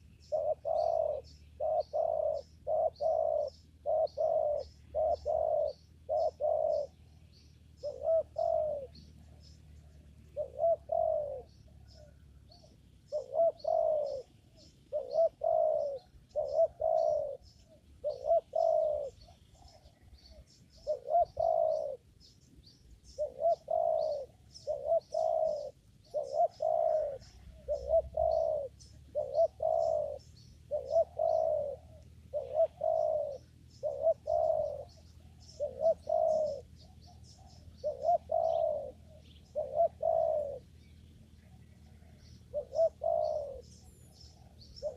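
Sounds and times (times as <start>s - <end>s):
dove cooing: 0.0s - 44.9s
small birds chirping: 0.0s - 44.9s.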